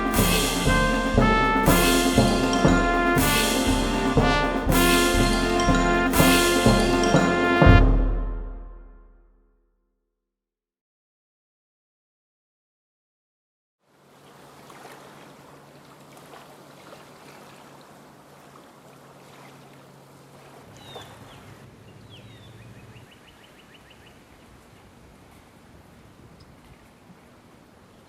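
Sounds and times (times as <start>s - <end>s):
bird rattling notes: 0.0s - 7.9s
bird chirping: 20.8s - 24.2s.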